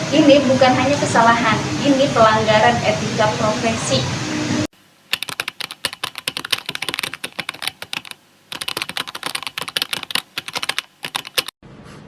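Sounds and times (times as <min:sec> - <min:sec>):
typing on computer keyboard: 0:05.1 - 0:11.5.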